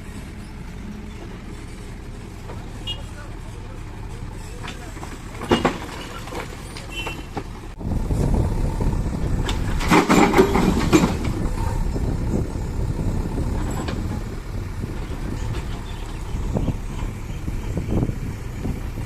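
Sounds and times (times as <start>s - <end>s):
diesel engine running: 0.0s - 19.0s
machinery clattering: 8.8s - 17.9s.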